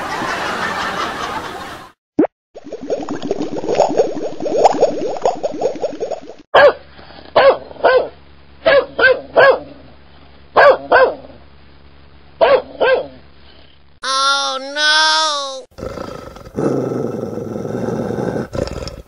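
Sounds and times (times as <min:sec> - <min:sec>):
dog barking: 0:06.6 - 0:06.8, 0:07.4 - 0:09.7, 0:10.6 - 0:11.4, 0:12.4 - 0:13.2.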